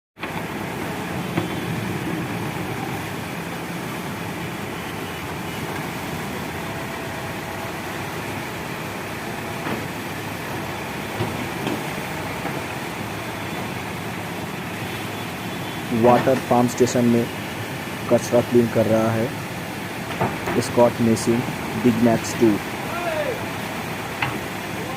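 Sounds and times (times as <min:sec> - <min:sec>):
diesel machinery engine running: 0:00.2 - 0:24.9
knocks and clanks: 0:11.2 - 0:12.8, 0:20.0 - 0:20.8.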